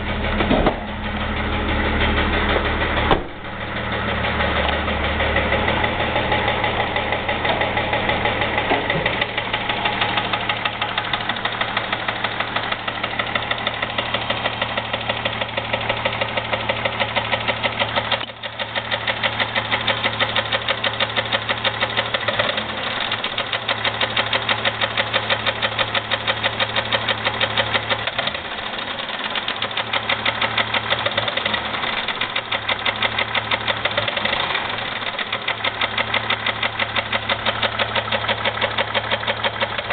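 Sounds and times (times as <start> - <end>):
car engine running: 0.0 - 39.9
rhythmic engine knock: 0.0 - 39.9.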